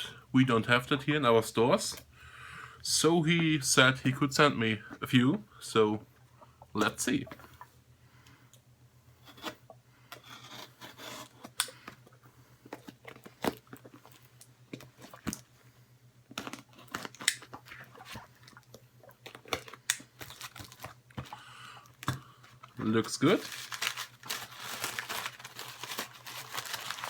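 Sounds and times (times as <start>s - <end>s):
packaging rustling: 19.3s - 27.0s.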